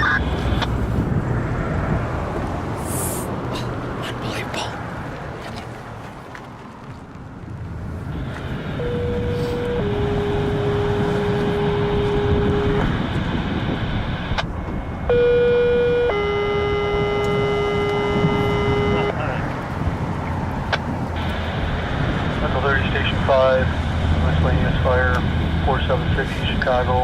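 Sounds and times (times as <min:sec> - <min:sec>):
low traffic rumble: 0:00.0 - 0:27.0
two-tone pager tones over radio: 0:08.8 - 0:14.5, 0:15.1 - 0:19.2.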